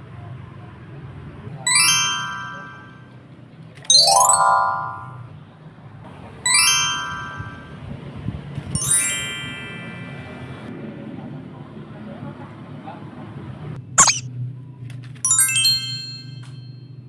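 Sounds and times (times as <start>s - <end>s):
bright chimes with upward slide: 1.7s - 3.0s, 3.9s - 5.2s, 6.5s - 7.6s, 14.0s - 14.2s.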